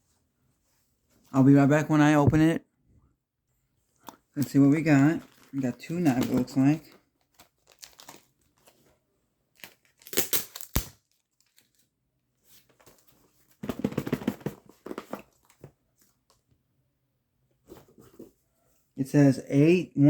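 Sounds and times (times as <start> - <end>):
packaging crinkling and tearing: 4.4 - 8.9, 9.5 - 11.9.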